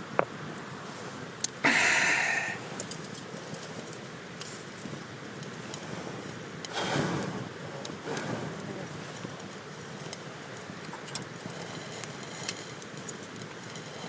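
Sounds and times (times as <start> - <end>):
campfire crackling: 0.0 - 14.0
loud hiss: 1.6 - 2.8.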